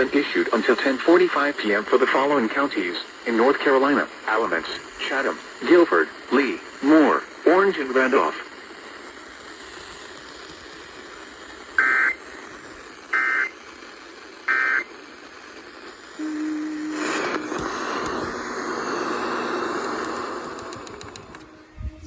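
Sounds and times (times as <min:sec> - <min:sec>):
radio station audio: 0:00.0 - 0:08.6, 0:16.2 - 0:22.0
radio hiss: 0:00.0 - 0:22.0
warbling data tones: 0:11.8 - 0:12.3, 0:13.1 - 0:13.6, 0:14.4 - 0:15.0, 0:16.2 - 0:22.0
low steady tone: 0:16.2 - 0:18.8.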